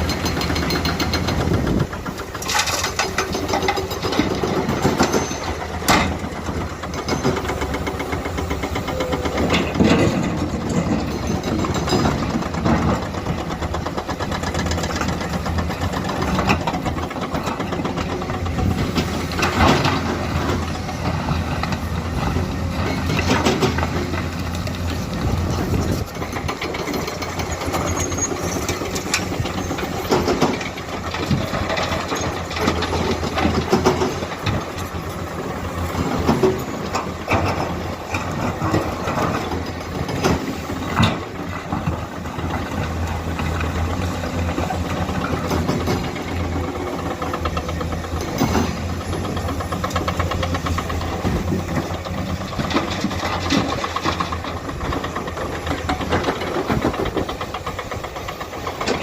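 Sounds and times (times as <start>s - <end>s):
excavator diesel engine running: 0.0s - 59.0s
machine knocks and clanks: 0.0s - 59.0s.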